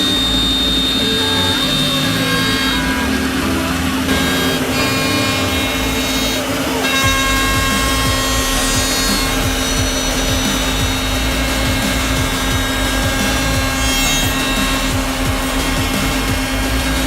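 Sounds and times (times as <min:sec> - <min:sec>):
machine hum: 0:00.0 - 0:17.0
machine spindles whining: 0:00.0 - 0:17.0.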